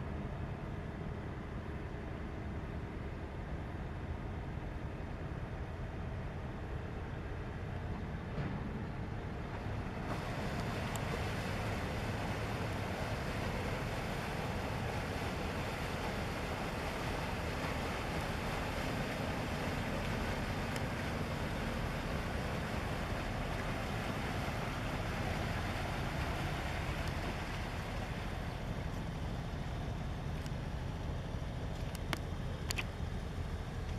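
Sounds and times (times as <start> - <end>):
cargo ship engine rumble: 0.0 - 33.9.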